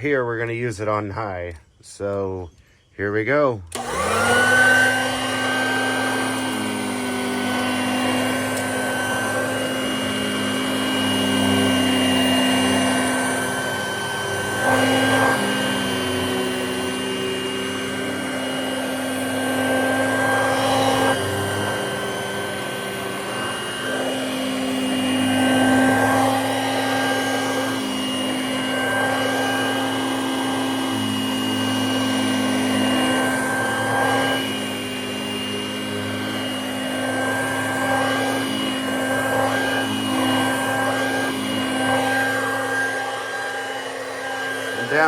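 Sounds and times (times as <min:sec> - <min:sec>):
handheld vacuum cleaner running: 0:03.7 - 0:45.0.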